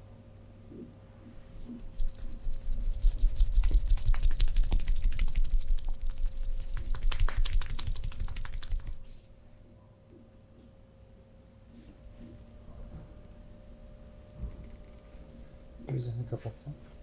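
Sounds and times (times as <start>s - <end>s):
hands tapping during massage: 3.4s - 9.0s.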